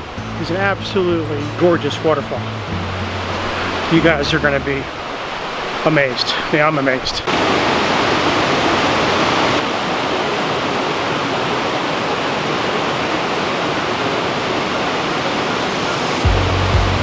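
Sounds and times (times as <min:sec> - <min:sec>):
waterfall pouring: 0:00.0 - 0:17.0
music with low beat: 0:16.2 - 0:17.0.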